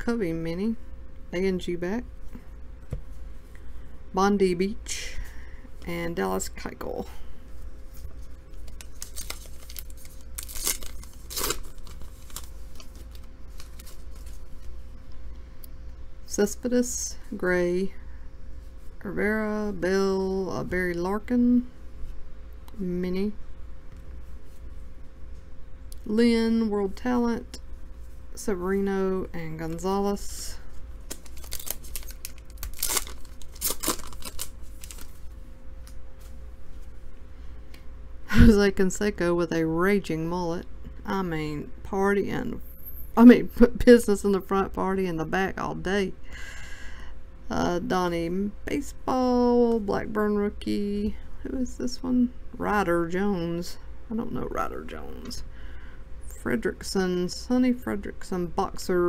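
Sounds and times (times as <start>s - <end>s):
cards being handled: 8.0s - 14.8s, 31.1s - 35.2s
wrapper being torn open: 8.6s - 14.4s, 31.1s - 35.2s.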